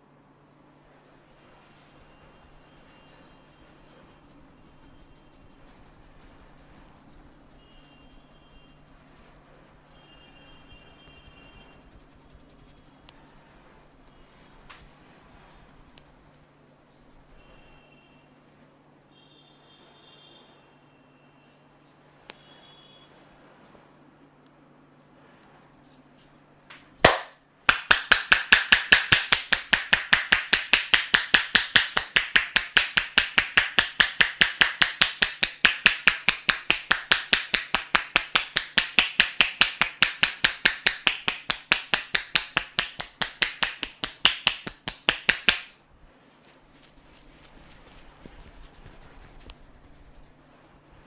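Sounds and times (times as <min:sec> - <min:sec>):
hands slapping body in massage: 0:26.7 - 0:45.8, 0:46.4 - 0:50.4.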